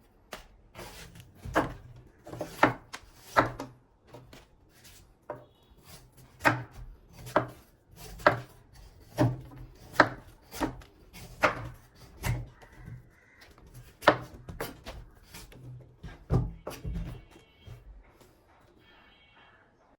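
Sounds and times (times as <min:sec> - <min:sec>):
blade chopping into fruit: 0:06.2 - 0:12.5.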